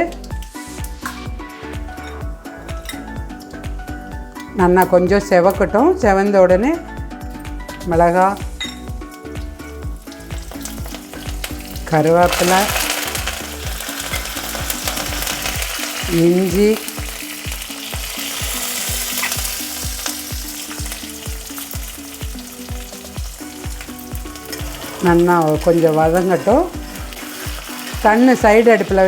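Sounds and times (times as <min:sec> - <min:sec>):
hot oil sizzling in a pan: 0:09.3 - 0:29.0.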